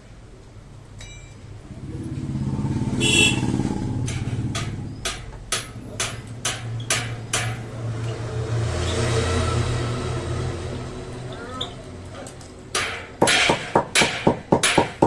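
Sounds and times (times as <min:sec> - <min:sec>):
vehicle engine running: 0:01.6 - 0:06.5
sharp metallic knocks: 0:03.0 - 0:08.7, 0:12.7 - 0:15.0.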